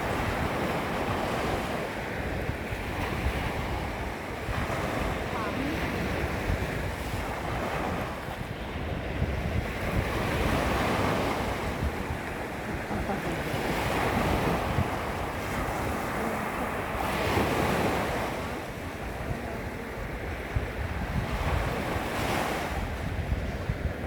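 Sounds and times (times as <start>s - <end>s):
small waves lapping on shore: 0.0s - 24.0s
wind buffeting microphone: 0.0s - 24.0s.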